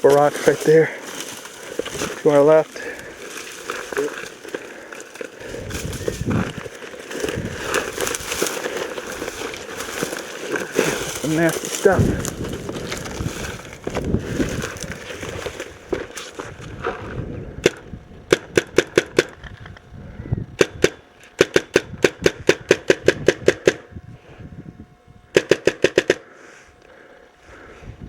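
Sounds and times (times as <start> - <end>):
rustling: 0.0 - 17.1
paintball marker shots: 20.6 - 23.8, 25.4 - 26.2.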